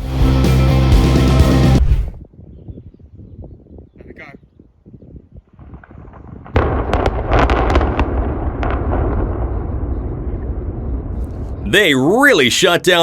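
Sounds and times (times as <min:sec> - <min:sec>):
deep rumble of structure collapsing: 0:05.6 - 0:11.7
loud explosive blast: 0:05.6 - 0:12.0
sharp cracks: 0:05.8 - 0:11.6.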